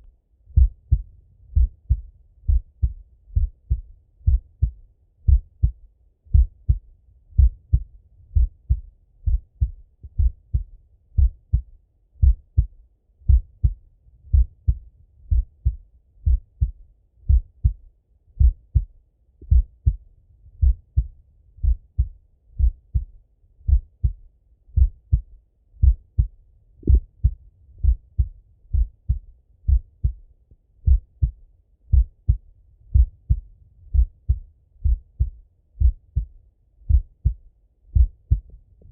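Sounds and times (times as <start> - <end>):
heartbeat through stethoscope: 0.5 - 38.9.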